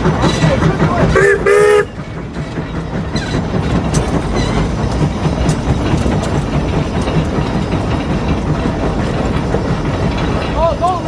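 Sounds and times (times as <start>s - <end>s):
steam engine exhaust chuffing: 0.0s - 11.0s.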